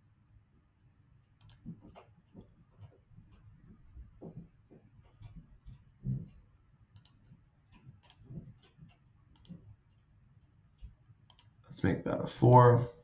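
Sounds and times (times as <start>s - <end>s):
mouse and keyboard clicks: 1.4s - 3.4s, 6.9s - 9.7s, 10.8s - 11.6s
low thump: 6.0s - 6.3s.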